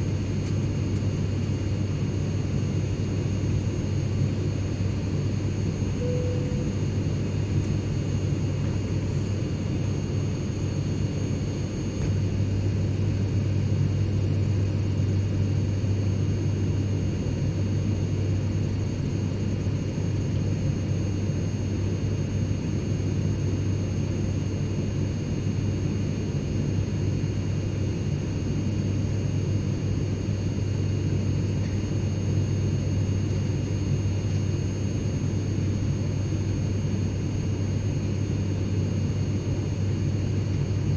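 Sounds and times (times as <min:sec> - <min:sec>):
jet cabin low rumble: 0:00.0 - 0:15.2
high-pitched engine whines: 0:05.9 - 0:07.5.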